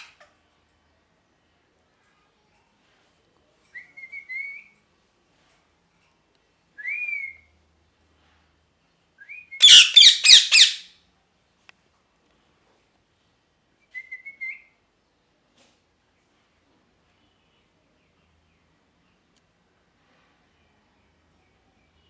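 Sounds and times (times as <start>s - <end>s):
parrot harsh screeches: 9.6s - 10.9s
parrot whistled calls: 9.6s - 10.9s.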